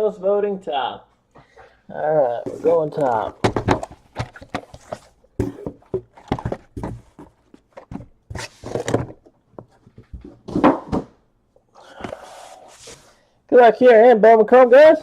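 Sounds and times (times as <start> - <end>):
cardboard and wrapper rustling: 2.3 - 10.6.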